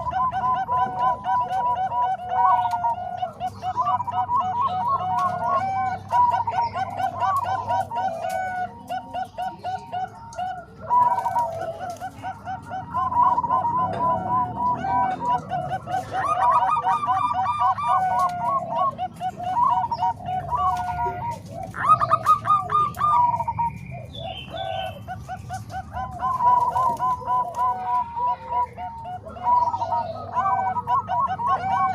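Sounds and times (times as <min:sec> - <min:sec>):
doves cooing: 0:00.0 - 0:31.9.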